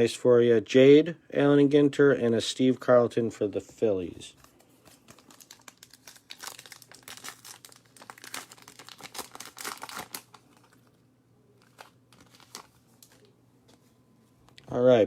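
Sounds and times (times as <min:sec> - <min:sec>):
plastic wrapper crinkling: 0:04.3 - 0:11.0, 0:11.6 - 0:13.8.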